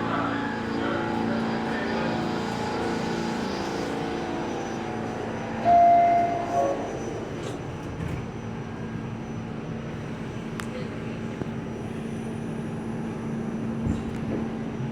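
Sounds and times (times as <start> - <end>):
subway train motor whine and rumble: 0.0 - 14.9
train horn blasts: 5.6 - 6.9.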